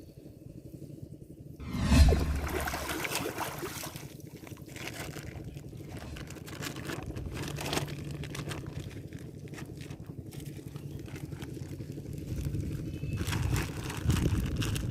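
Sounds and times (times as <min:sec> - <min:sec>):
shallow water splashing: 0:01.7 - 0:06.2.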